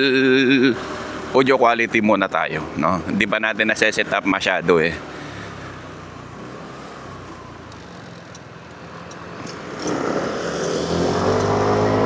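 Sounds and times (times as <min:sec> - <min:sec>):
wind and road noise: 0:00.0 - 0:12.0
motorcycle engine: 0:04.0 - 0:12.0.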